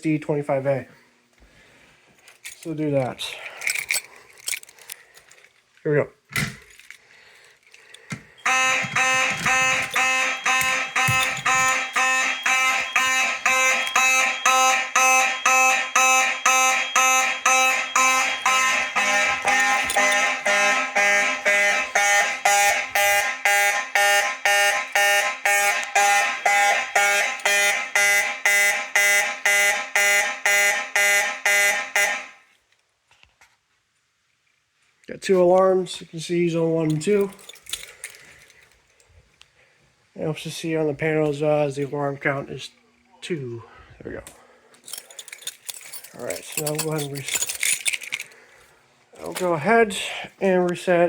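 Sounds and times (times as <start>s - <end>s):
fire alarm tones pulsing: 8.4s - 32.4s.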